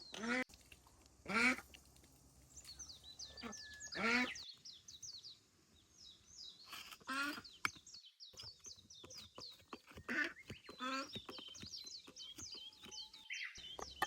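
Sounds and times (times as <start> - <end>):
small birds chirping: 0.0 - 14.0
farm animal calls: 3.2 - 4.4.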